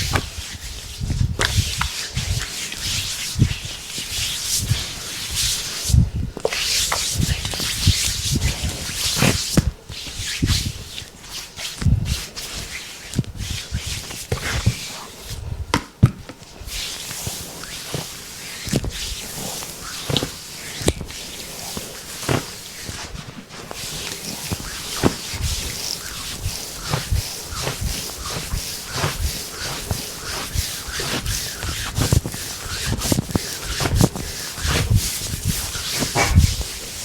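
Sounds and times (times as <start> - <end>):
hands rubbing skin: 16.8 - 37.0.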